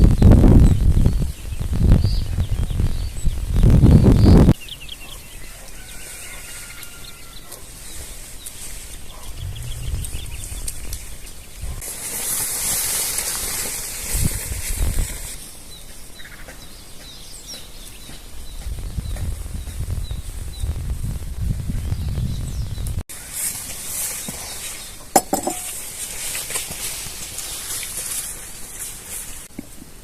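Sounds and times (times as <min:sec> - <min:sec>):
small birds chirping: 0:00.0 - 0:11.8, 0:15.5 - 0:20.9
broad rushing noise: 0:09.2 - 0:11.8
low thuds: 0:09.2 - 0:11.8.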